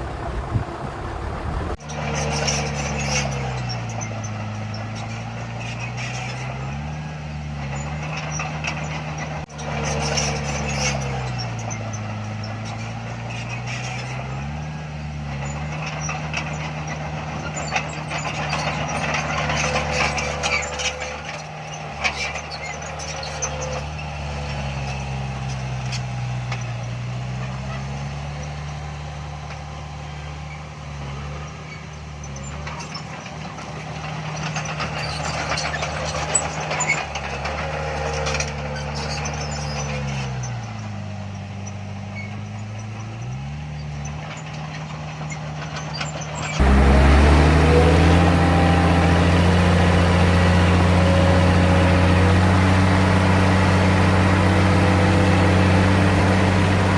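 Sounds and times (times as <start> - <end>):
diesel engine working under load: 0.0 - 56.9
metallic clanks and rattles: 7.6 - 49.2.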